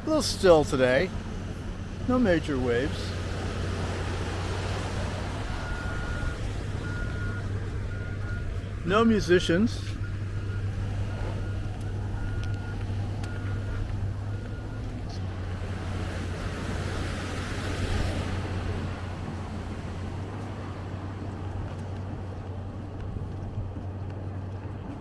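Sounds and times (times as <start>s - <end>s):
reversing alarm beeps: 4.9s - 15.2s.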